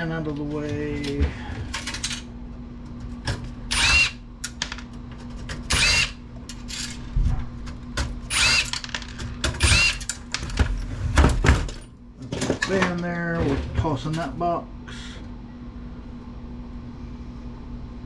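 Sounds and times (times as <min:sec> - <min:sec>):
power drill whining: 0:03.7 - 0:04.2, 0:05.7 - 0:06.2, 0:08.3 - 0:08.8, 0:09.6 - 0:10.0.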